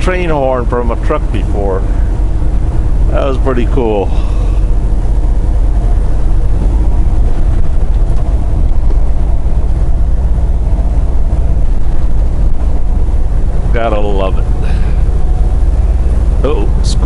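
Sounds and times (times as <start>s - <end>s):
diesel truck engine rumble: 0.0s - 17.0s
road noise: 0.0s - 17.0s.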